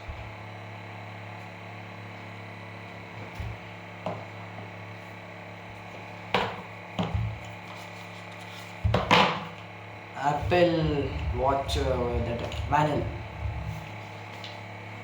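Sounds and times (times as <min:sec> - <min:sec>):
steady electrical hum: 0:00.0 - 0:15.0
knocks and taps on packaging: 0:08.8 - 0:09.4.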